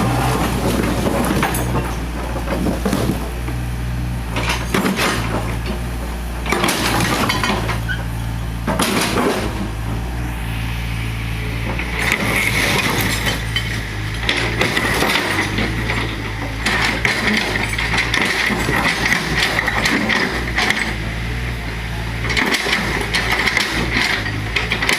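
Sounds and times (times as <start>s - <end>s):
rubble clattering and crashing: 0.0s - 3.7s, 11.7s - 21.0s
excavator engine running: 0.0s - 24.9s
high steady whine: 9.4s - 16.6s.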